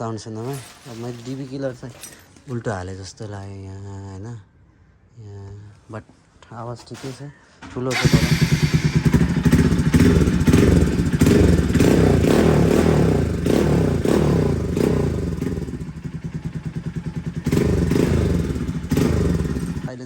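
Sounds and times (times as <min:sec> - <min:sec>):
motorcycle engine revving: 0:00.4 - 0:02.2, 0:07.9 - 0:20.0.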